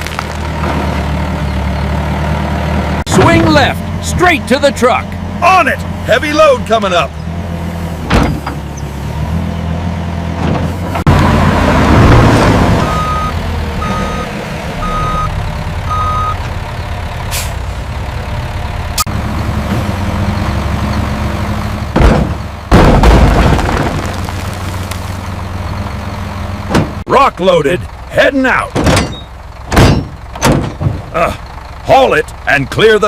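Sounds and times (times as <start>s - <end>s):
diesel engine running: 0.0s - 33.0s
reversing beeps: 12.9s - 16.4s
rock dumped into truck bed: 22.0s - 24.8s.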